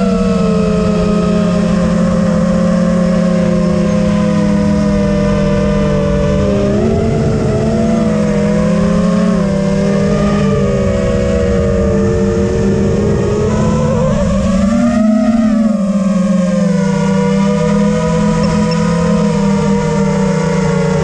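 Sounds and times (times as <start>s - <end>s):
drone motors whining: 0.0s - 21.0s
wind rumble on microphone: 0.0s - 21.0s.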